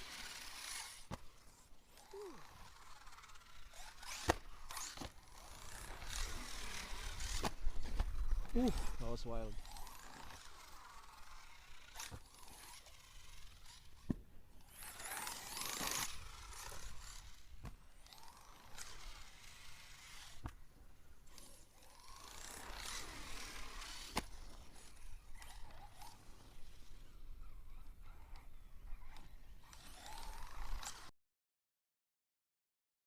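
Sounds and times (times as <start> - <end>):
electric motor whining: 1.9 - 14.0, 14.6 - 20.6, 21.3 - 27.2, 28.3 - 31.1.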